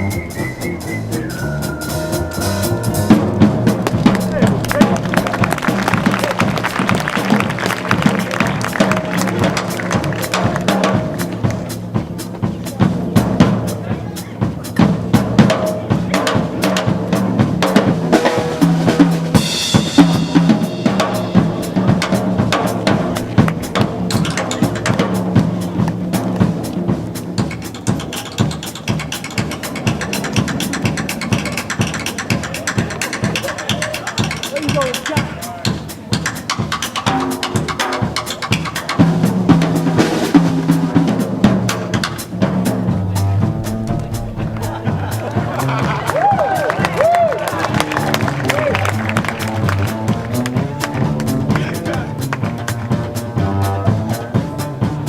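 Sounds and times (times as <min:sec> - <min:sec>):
low bass line: 0:00.0 - 0:14.1, 0:18.8 - 0:27.1, 0:42.3 - 0:47.1, 0:47.7 - 0:55.0
band holding low notes: 0:00.0 - 0:55.0
drum kit solo: 0:00.0 - 0:55.0
cymbal crash: 0:43.2 - 0:46.4.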